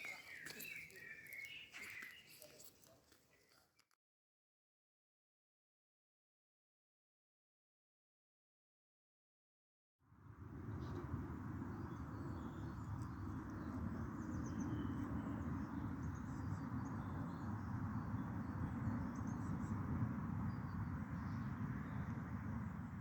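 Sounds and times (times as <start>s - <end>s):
bird chirps and twitters: 0.0s - 2.8s
outdoor background noise: 0.0s - 4.0s, 10.1s - 23.0s.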